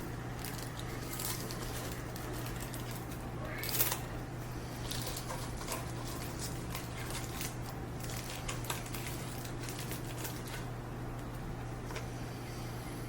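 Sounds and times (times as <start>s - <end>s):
tape and foil crackling: 0.3s - 4.1s, 4.8s - 11.4s.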